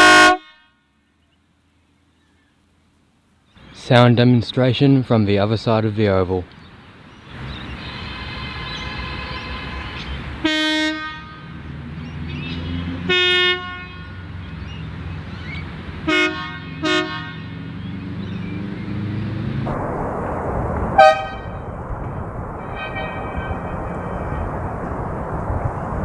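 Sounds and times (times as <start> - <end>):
electric air horn blasts: 0.0 - 0.8, 8.0 - 11.6, 13.0 - 14.4, 16.0 - 17.6, 21.0 - 21.5, 22.6 - 24.5
low background rumble: 19.7 - 26.0.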